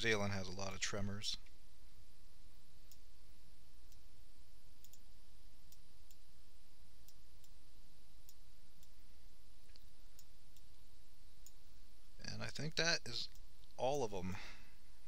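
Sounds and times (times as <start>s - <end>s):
low hum and hiss: 0.0s - 15.0s
computer mouse clicking: 4.8s - 6.2s, 9.6s - 10.8s.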